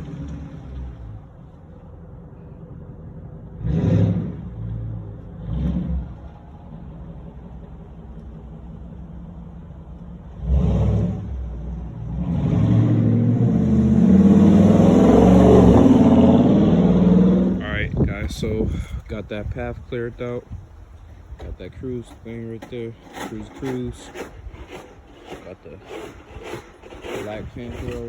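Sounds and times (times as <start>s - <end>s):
car engine revving: 2.7s - 17.6s.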